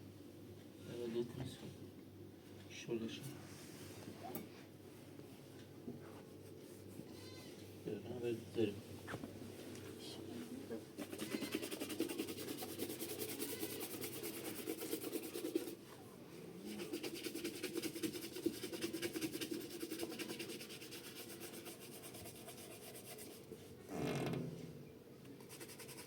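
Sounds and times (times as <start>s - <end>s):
rapid scraping strokes: 11.0s - 15.8s.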